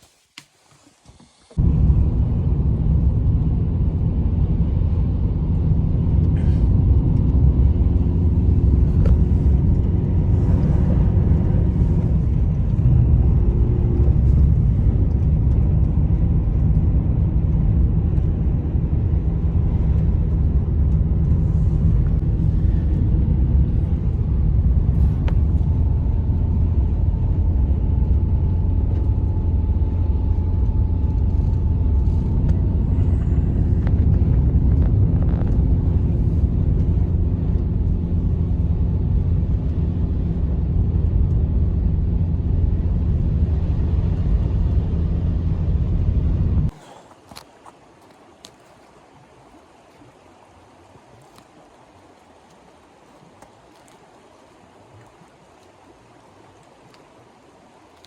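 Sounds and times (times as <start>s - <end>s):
loud low rumble: 1.6s - 46.8s.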